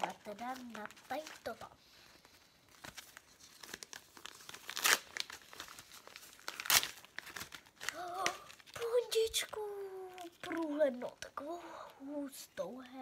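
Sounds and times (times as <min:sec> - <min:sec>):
plastic packaging crinkling: 0:00.0 - 0:12.9
plastic packaging ripping: 0:02.7 - 0:11.4.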